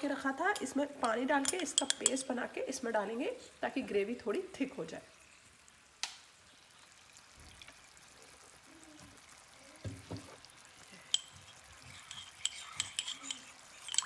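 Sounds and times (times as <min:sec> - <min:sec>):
spoon clinking against bowl: 0:00.5 - 0:02.3, 0:11.0 - 0:14.0.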